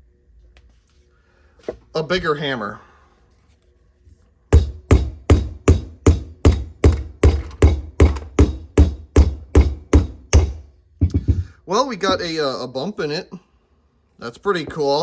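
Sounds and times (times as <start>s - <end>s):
hammer striking plastic bulb: 4.5s - 11.5s.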